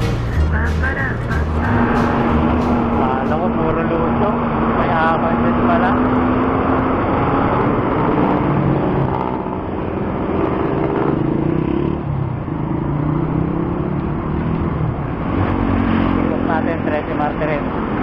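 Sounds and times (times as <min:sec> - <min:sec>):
car and motorcycle engines: 0:00.0 - 0:18.0
road noise rushing: 0:00.0 - 0:18.0.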